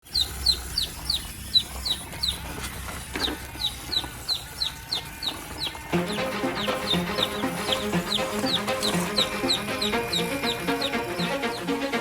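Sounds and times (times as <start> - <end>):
bird chirping: 0.0 - 12.0
music with a beat: 5.9 - 12.0.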